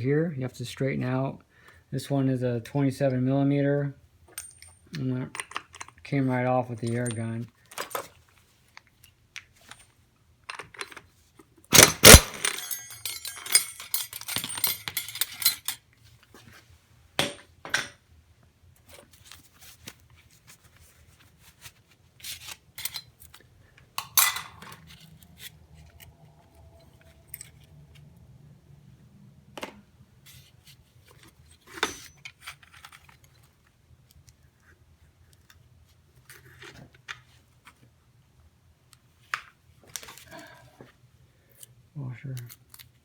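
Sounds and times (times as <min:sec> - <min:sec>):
metal parts and tools clattering: 0:04.3 - 0:06.0, 0:06.7 - 0:08.1, 0:11.7 - 0:15.8, 0:22.8 - 0:23.2, 0:24.0 - 0:25.0, 0:31.6 - 0:33.1.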